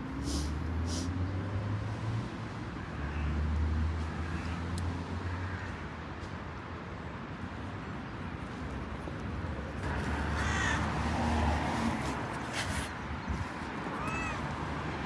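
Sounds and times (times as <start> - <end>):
animal cry: 14.0 - 14.5.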